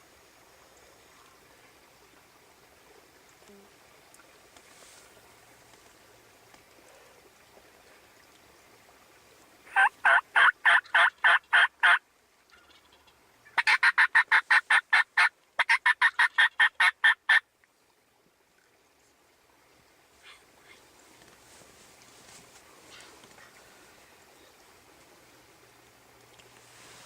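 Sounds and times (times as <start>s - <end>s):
turkey yelping: 9.7s - 12.0s, 13.6s - 17.4s.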